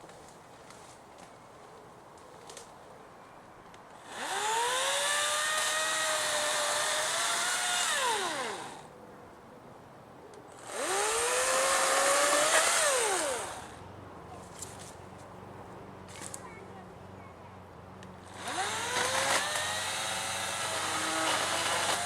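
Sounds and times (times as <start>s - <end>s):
electric chainsaw whining: 4.0s - 8.8s, 10.6s - 13.8s, 18.2s - 22.0s.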